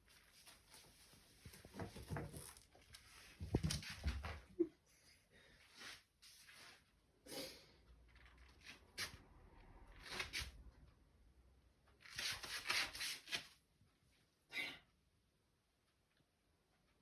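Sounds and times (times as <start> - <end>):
kitten rustling and scratching: 0.0 - 4.5, 7.9 - 10.9.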